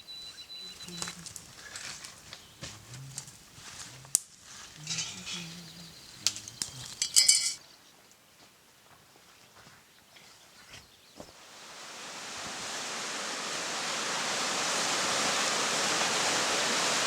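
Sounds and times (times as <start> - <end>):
faint low murmuring: 2.4 - 7.6
metal clinks and clatter: 6.3 - 7.6.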